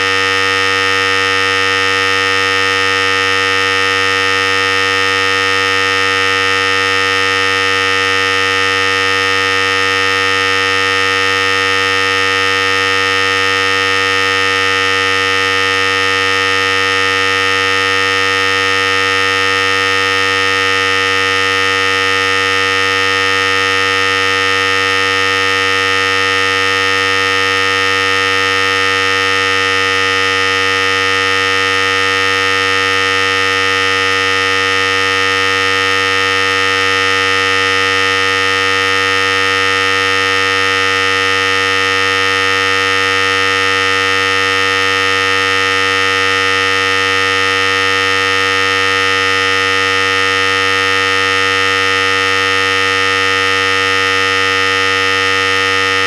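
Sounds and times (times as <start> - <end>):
electric hair clipper buzzing: 54.2 - 56.0.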